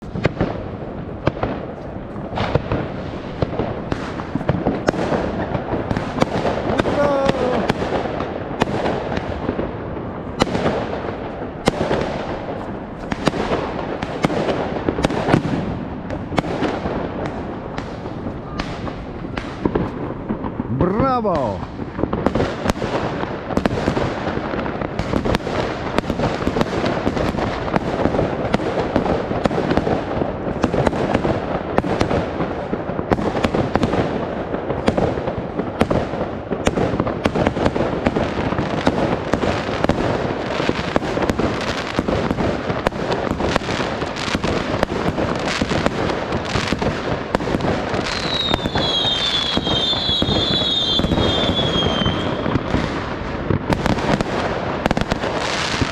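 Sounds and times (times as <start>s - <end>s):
fireworks bangs and crackling: 0.0s - 55.9s.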